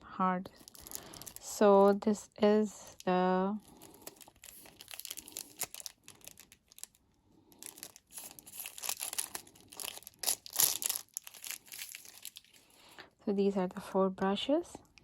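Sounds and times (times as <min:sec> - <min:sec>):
packaging crinkling and tearing: 0:00.5 - 0:02.0, 0:02.9 - 0:12.8.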